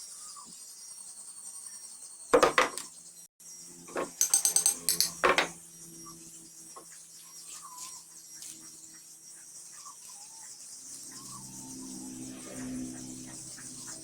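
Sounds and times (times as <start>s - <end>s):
high insect-like hiss: 4.9s - 14.0s.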